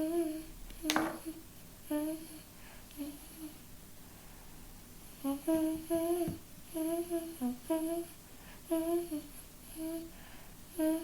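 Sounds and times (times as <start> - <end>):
woman humming: 5.2 - 8.1, 8.7 - 10.1, 10.8 - 11.0.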